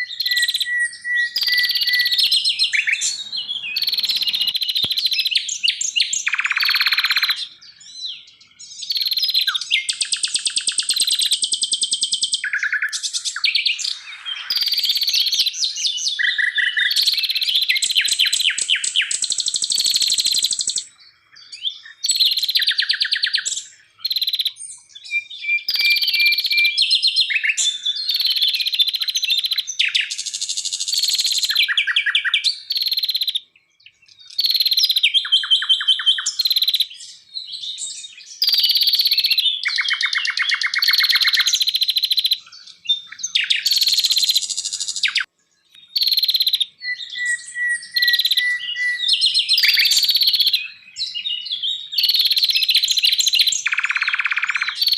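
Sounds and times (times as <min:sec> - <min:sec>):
songbirds singing: 0:00.0 - 0:54.9.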